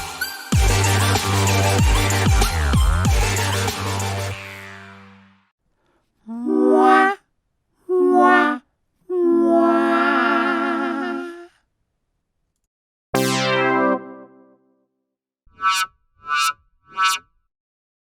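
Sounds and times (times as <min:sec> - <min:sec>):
sudden pitched tone: 0:13.2 - 0:14.5
fail sound effect notes: 0:13.2 - 0:14.6.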